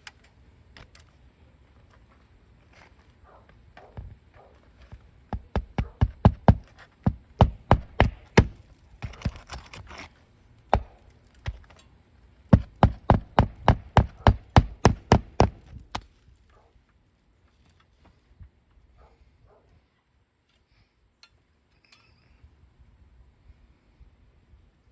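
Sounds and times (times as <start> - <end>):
hammer driving nails: 5.4 - 9.5, 12.6 - 16.0.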